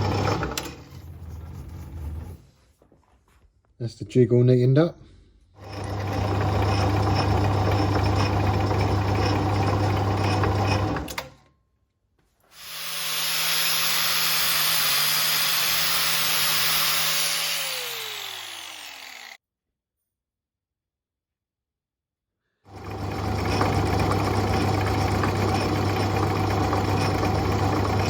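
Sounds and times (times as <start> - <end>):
metal lathe running: 5.6 - 11.1, 12.6 - 19.4, 22.8 - 28.0.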